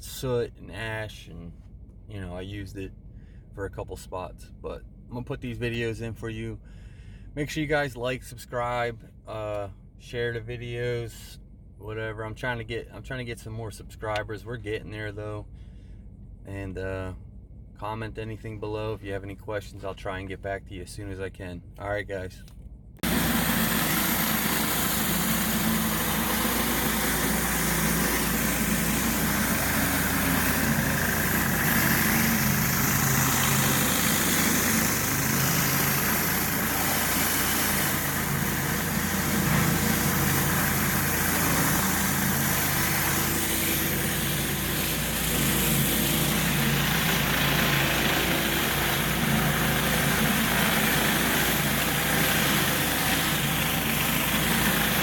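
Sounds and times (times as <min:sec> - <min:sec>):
dense spray hiss: 0:23.0 - 0:55.0
pressure washer engine running: 0:23.0 - 0:55.0.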